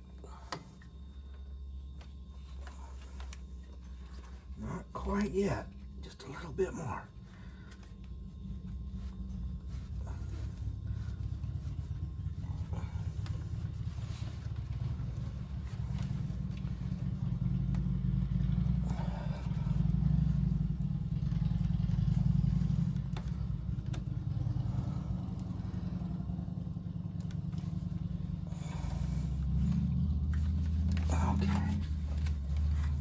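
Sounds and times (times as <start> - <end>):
steady low rumble: 0.0 - 33.0
hands clicking and scraping belt: 27.1 - 33.0.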